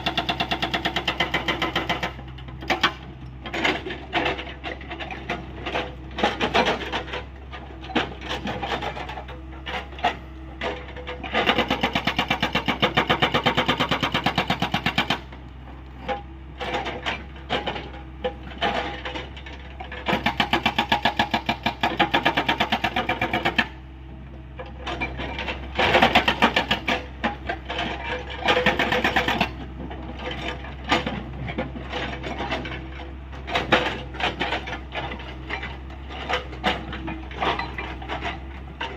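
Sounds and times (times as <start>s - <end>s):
hydraulic breaker hammering rock: 0.0s - 4.8s, 11.2s - 15.3s, 20.0s - 23.8s, 25.0s - 29.6s
excavator engine hum: 0.0s - 38.9s.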